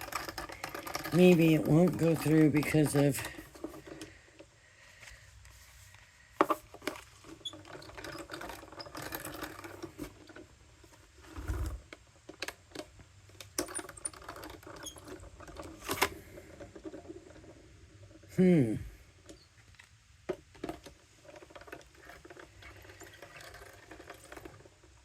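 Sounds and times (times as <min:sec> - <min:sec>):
scratching and rustling: 0:00.0 - 0:12.0, 0:19.5 - 0:25.0.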